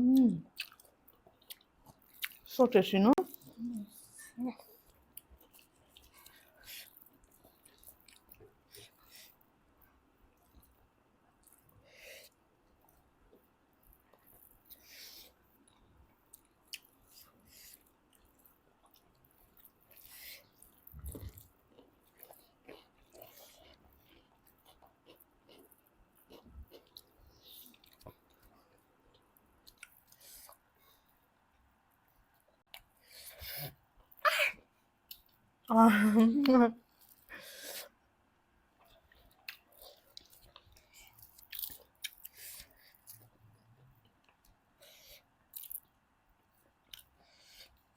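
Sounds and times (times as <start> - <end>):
chewing and mouth smacking: 0.5 - 2.5, 3.3 - 9.1, 15.6 - 30.7, 38.8 - 43.4
chewing and biting: 38.8 - 43.4.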